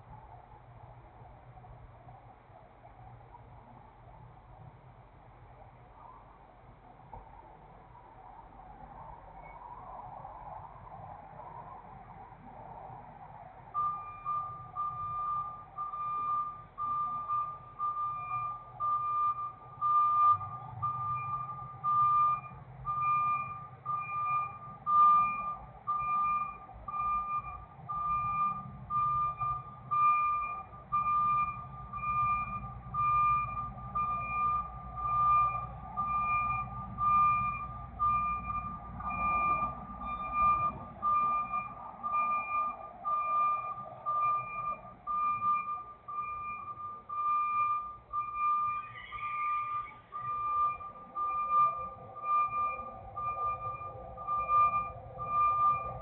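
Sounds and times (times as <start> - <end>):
diesel engine rumbling: 0.0 - 56.0
reversing alarm beeping: 13.8 - 56.0.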